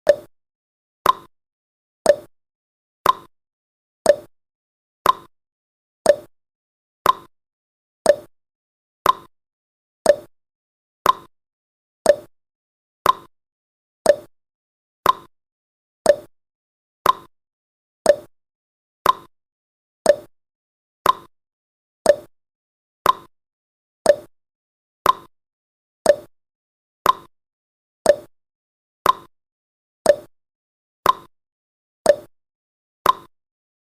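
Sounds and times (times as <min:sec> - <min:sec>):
clock ticking: 0:02.1 - 0:02.3, 0:04.1 - 0:04.3, 0:06.1 - 0:06.3, 0:08.1 - 0:08.3, 0:09.0 - 0:09.3, 0:10.1 - 0:10.3, 0:11.0 - 0:11.3, 0:12.1 - 0:12.3, 0:13.0 - 0:13.3, 0:14.1 - 0:14.3, 0:15.0 - 0:15.3, 0:16.1 - 0:16.3, 0:17.0 - 0:17.3, 0:18.1 - 0:18.3, 0:20.1 - 0:20.3, 0:21.0 - 0:21.3, 0:22.1 - 0:22.3, 0:23.0 - 0:23.3, 0:24.1 - 0:24.3, 0:26.1 - 0:26.3, 0:27.0 - 0:27.3, 0:28.1 - 0:28.3, 0:29.0 - 0:29.3, 0:30.1 - 0:30.3, 0:31.0 - 0:31.3, 0:32.1 - 0:32.3, 0:33.0 - 0:33.3.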